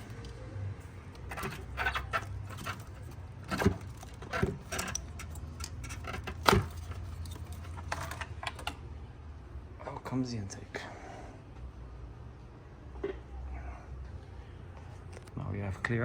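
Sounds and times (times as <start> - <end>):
plastic and metal parts rattling: 0.0 - 8.8.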